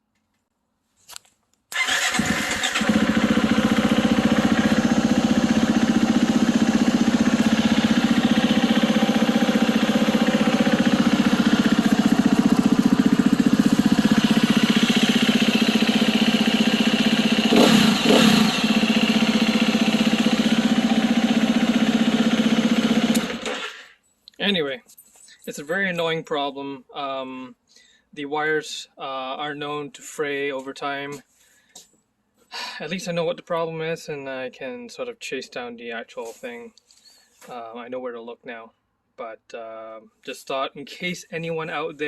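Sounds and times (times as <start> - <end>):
electric starter cranking: 1.7 - 4.5, 22.6 - 24.0
motorcycle engine idling: 1.8 - 23.8.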